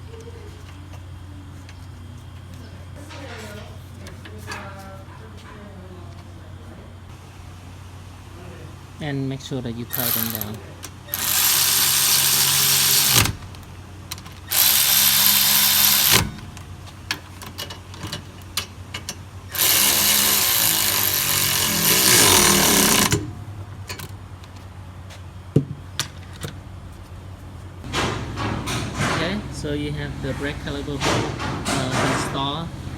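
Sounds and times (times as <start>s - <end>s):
power tool running down bolts: 9.9s - 16.7s, 19.1s - 23.8s.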